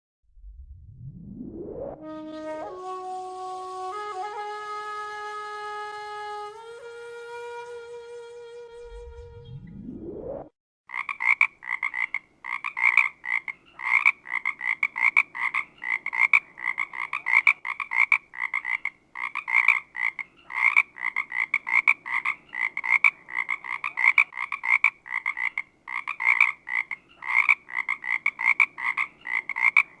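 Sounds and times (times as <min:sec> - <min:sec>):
rising pitch sweep: 0:00.3 - 0:04.4, 0:07.1 - 0:10.5
frogs croaking: 0:10.9 - 0:30.0.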